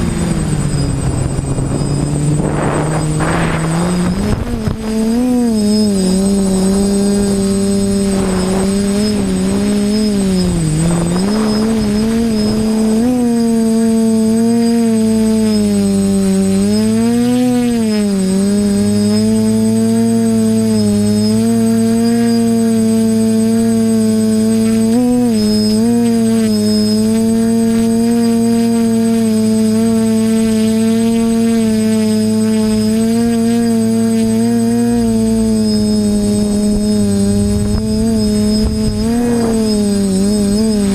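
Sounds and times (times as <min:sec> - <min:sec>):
wind gusts rushing past: 0:00.0 - 0:13.2, 0:35.2 - 0:40.9
quadcopter motors droning: 0:00.0 - 0:40.9.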